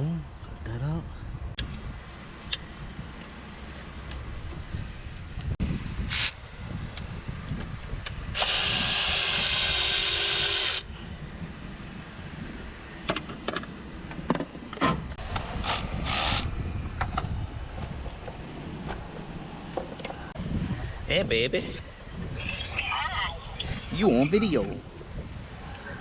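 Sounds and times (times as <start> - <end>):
power tool running: 8.3 - 10.8.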